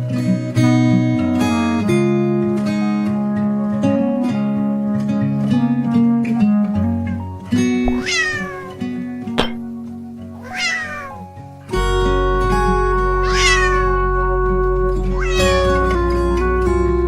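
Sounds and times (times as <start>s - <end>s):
cat meowing: 7.9s - 8.8s, 10.4s - 11.3s, 13.2s - 14.2s, 15.1s - 15.8s.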